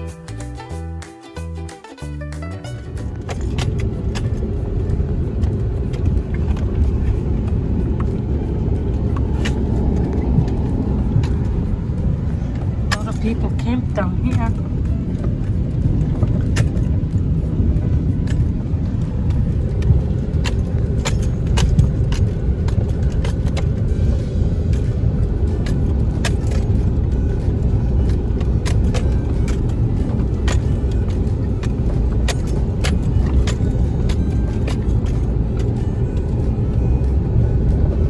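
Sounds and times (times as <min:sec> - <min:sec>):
car driving rumble: 0:00.0 - 0:38.0
sharp clicks and rattles: 0:02.7 - 0:36.9.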